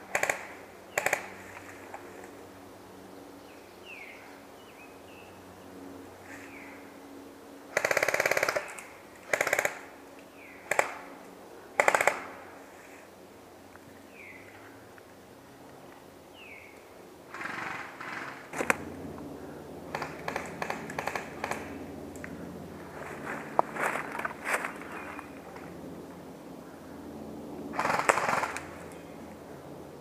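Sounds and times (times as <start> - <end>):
electric rifle full-auto bursts: 0.1 - 1.4, 7.7 - 9.9, 11.8 - 12.3, 19.9 - 21.8, 27.7 - 28.7.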